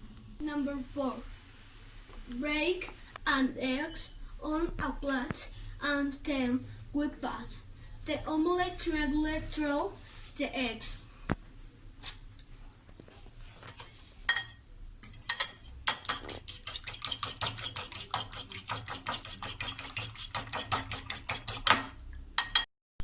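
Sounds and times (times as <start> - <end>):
cutlery clinking on crockery: 13.6 - 22.7.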